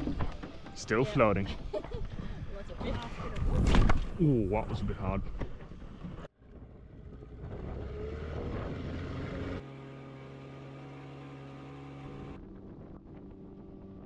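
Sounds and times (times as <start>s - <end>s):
boat motor running: 6.6s - 14.0s.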